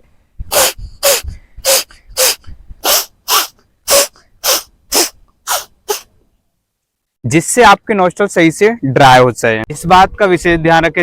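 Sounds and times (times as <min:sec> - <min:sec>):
breath puffed out through nose: 0:00.4 - 0:06.1.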